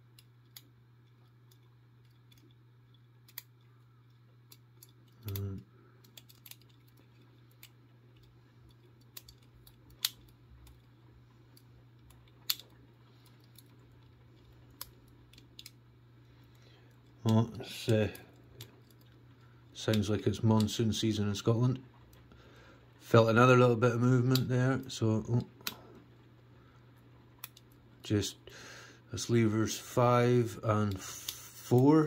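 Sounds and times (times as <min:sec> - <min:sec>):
low steady hum: 0:00.0 - 0:32.0
metallic lock picking clicks: 0:00.2 - 0:03.6, 0:04.5 - 0:10.9, 0:11.6 - 0:13.7, 0:14.7 - 0:15.8.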